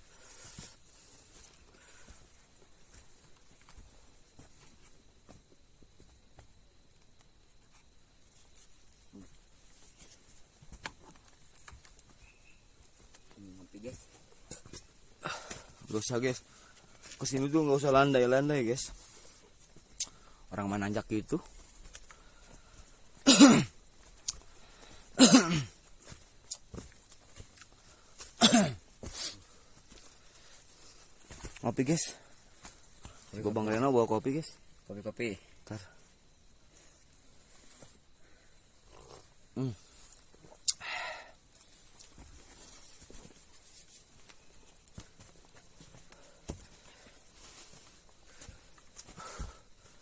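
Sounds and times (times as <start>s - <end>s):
faint footsteps: 0.0s - 33.9s, 41.5s - 50.0s
person coughing hoarsely: 23.2s - 23.7s, 25.2s - 25.8s, 28.4s - 28.8s
rustling: 41.6s - 50.0s.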